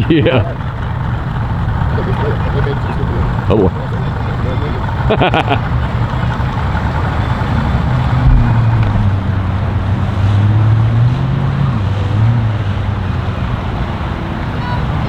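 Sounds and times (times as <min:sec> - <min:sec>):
engine humming: 0:00.0 - 0:15.0
wind noise on microphone: 0:07.6 - 0:11.2.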